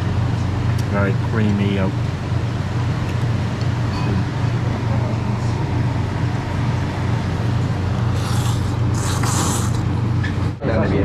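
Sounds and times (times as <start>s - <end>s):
restaurant hum: 0.0s - 11.0s
faint voices: 3.8s - 9.8s.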